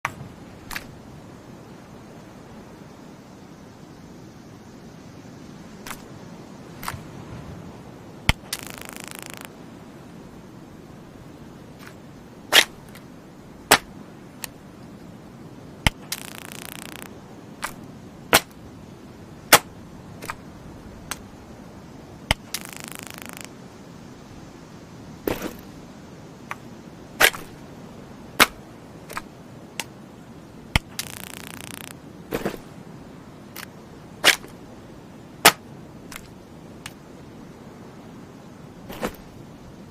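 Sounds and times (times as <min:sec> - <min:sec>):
stun gun electric snaps: 0:08.3 - 0:09.5, 0:15.9 - 0:18.6, 0:22.3 - 0:23.5, 0:30.8 - 0:32.0
crackling electric arcing: 0:08.3 - 0:09.6, 0:15.8 - 0:17.8, 0:22.3 - 0:23.6, 0:30.8 - 0:32.0.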